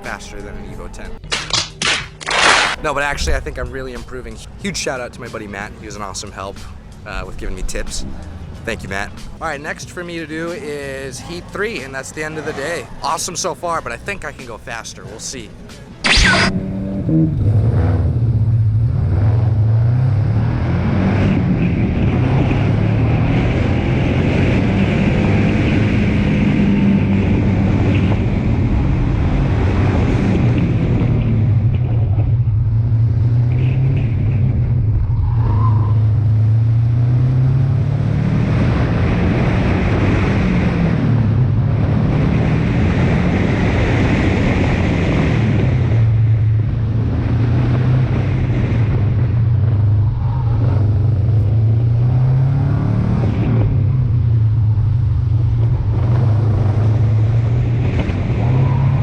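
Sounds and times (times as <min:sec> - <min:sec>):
car engine revving hard: 0:16.0 - 0:59.0.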